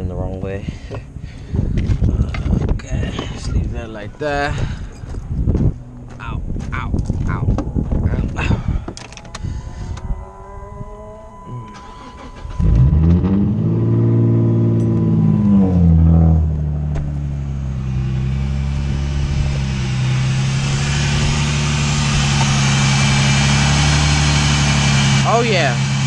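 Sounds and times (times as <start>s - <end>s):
car engine starting and idling: 6.9s - 26.0s.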